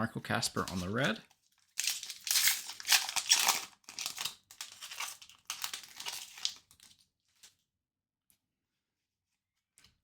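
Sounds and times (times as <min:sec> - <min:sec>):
card pack wrapper tearing: 0:01.7 - 0:06.8.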